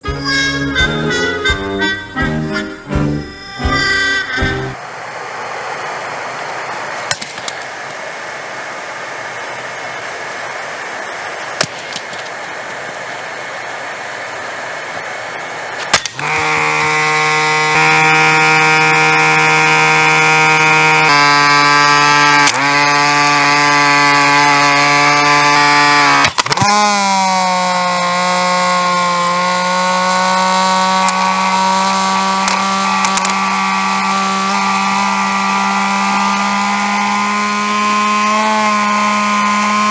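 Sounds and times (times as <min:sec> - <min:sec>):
hair dryer running: 0:02.9 - 0:39.9
hair dryer clicks: 0:26.2 - 0:26.7, 0:32.4 - 0:33.4.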